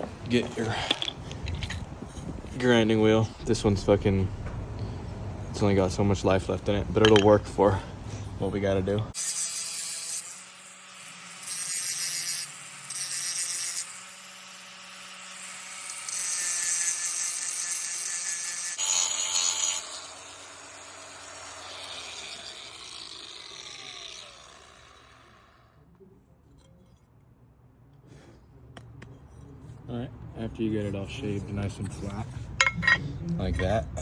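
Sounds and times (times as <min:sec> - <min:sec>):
angle grinder grinding metal: 0:09.1 - 0:25.7
grinder motor running: 0:09.2 - 0:25.7.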